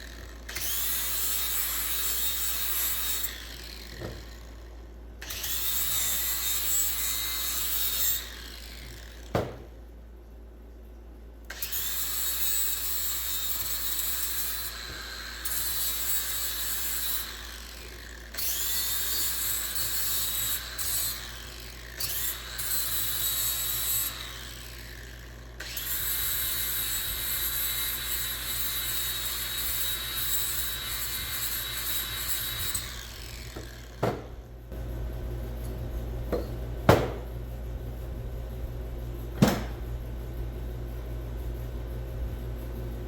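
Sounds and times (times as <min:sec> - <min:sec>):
power tool whining: 0:00.0 - 0:09.6, 0:11.5 - 0:34.3
sharp knocks: 0:09.3 - 0:09.7, 0:36.3 - 0:37.3.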